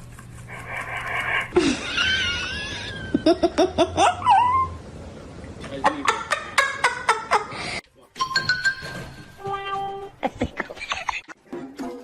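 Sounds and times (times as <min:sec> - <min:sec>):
person laughing: 0:01.6 - 0:04.5, 0:10.2 - 0:11.4.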